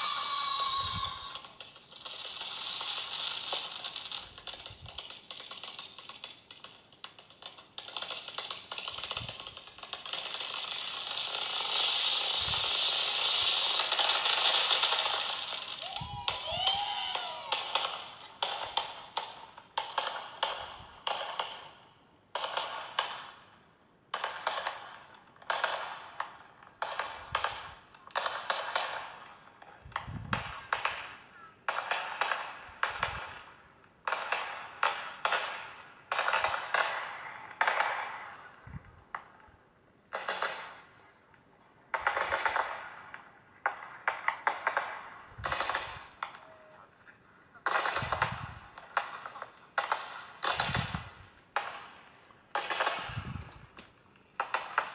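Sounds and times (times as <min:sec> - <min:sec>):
fireworks crackling bangs: 0:00.0 - 0:23.4, 0:24.1 - 0:39.5, 0:40.1 - 0:41.1, 0:41.9 - 0:46.6, 0:47.6 - 0:54.9
fireworks deeper thuds: 0:07.5 - 0:21.7, 0:47.6 - 0:54.9.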